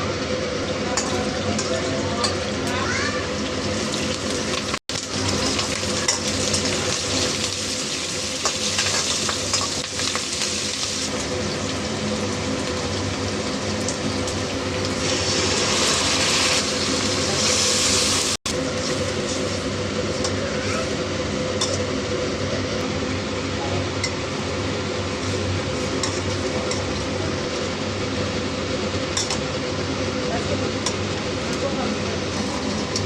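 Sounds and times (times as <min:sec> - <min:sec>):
chicken sizzling in oil: 0:00.0 - 0:21.6.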